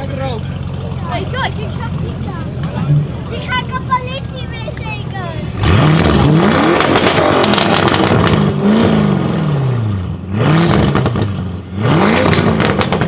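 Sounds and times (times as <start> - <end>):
car engine revving: 0.0 - 13.0
exhaust crackles: 0.0 - 13.0.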